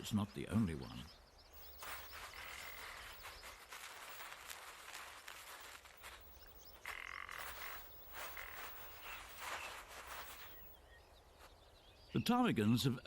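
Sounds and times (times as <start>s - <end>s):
faint animal calls: 1.6s - 10.7s.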